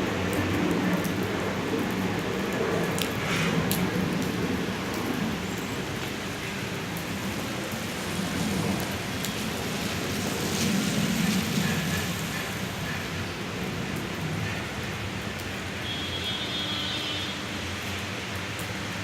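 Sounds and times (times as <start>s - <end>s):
rain pattering: 0.0s - 19.0s.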